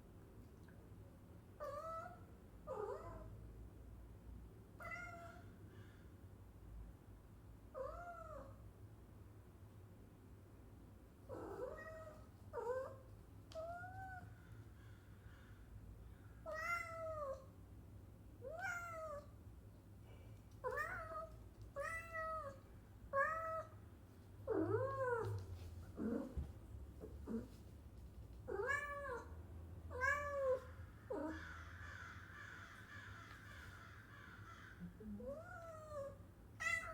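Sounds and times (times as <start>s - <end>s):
cat meowing: 4.8s - 5.4s, 16.5s - 17.5s, 18.4s - 19.3s, 20.6s - 23.8s, 29.9s - 31.4s, 35.3s - 36.9s.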